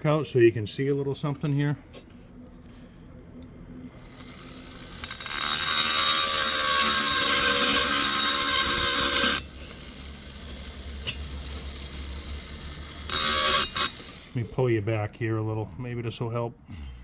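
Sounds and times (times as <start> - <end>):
rotary grinding tool whine: 3.4 - 14.5.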